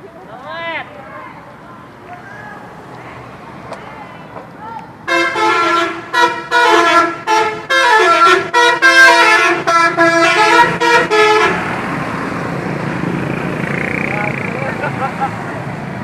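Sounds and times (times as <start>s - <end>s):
steady background noise: 0.0s - 8.6s
musical air horn tune: 5.1s - 11.6s.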